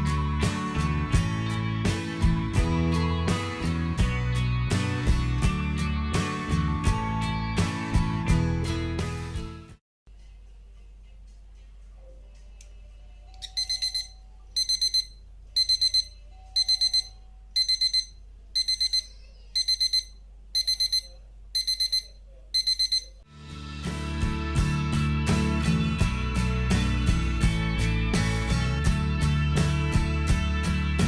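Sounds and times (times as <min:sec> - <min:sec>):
guitar music: 0:00.0 - 0:09.8, 0:23.3 - 0:31.0
fire alarm buzzer beeping: 0:13.4 - 0:23.2.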